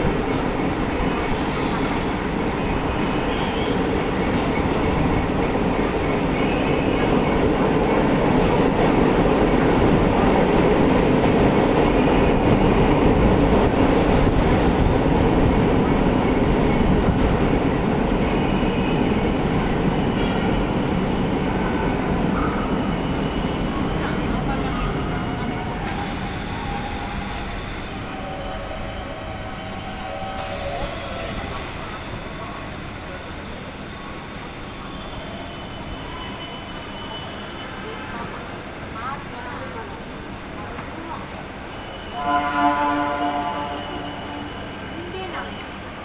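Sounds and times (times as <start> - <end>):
train wheels rumbling: 0.0 - 36.9
high wheel squeals: 21.5 - 38.0.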